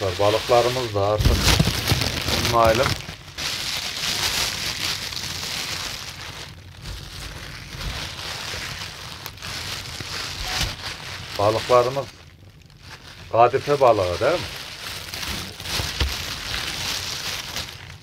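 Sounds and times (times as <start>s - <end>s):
fish sizzling in hot oil: 2.5s - 13.4s.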